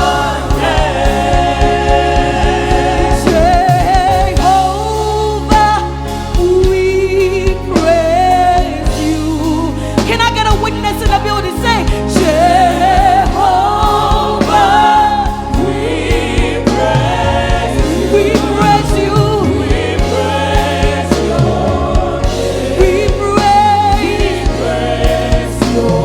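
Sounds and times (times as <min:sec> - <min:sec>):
drum beat: 0:00.0 - 0:04.7, 0:13.0 - 0:26.0
voices singing together: 0:00.0 - 0:05.1, 0:12.1 - 0:26.0
band playing: 0:00.0 - 0:07.0, 0:07.6 - 0:26.0
low bass: 0:00.0 - 0:26.0.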